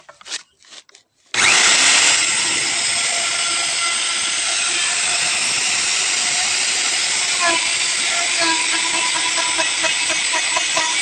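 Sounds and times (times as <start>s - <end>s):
wood router routing: 1.4s - 11.0s.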